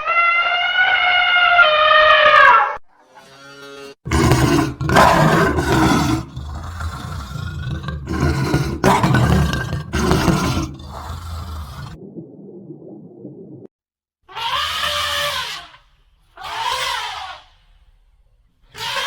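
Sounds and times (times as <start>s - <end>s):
tiger roaring: 4.1s - 12.0s.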